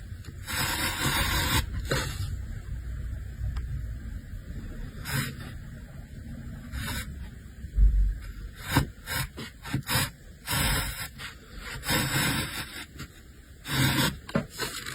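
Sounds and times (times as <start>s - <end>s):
hand tool scraping wood: 13.7s - 14.9s.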